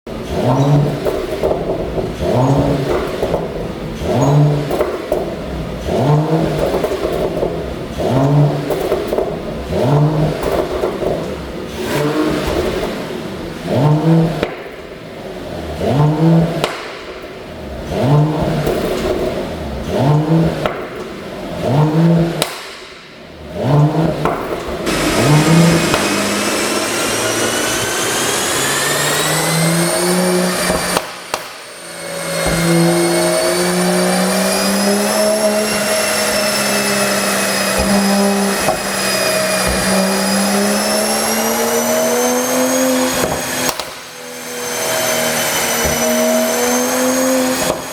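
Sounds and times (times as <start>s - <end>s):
car engine revving with exhaust pops: 0.0s - 47.9s.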